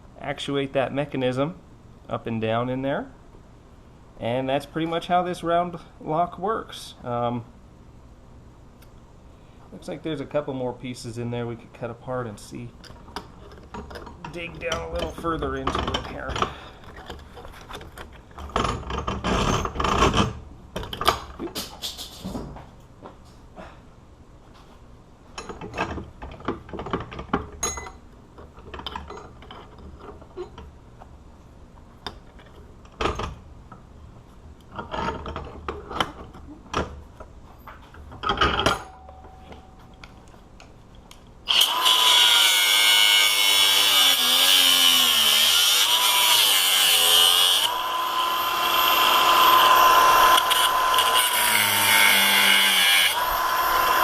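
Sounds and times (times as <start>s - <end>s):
cutoff wheel cutting metal: 41.5s - 54.0s.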